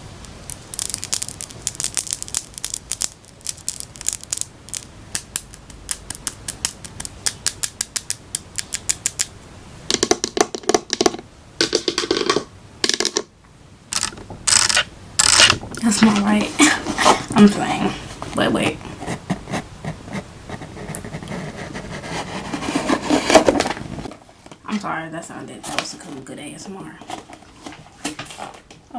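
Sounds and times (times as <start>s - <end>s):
scissors cutting cardboard: 18.6s - 23.8s.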